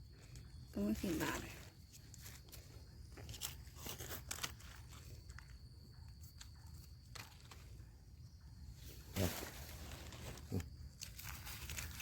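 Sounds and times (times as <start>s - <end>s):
dry leaves crunching: 9.2s - 12.0s.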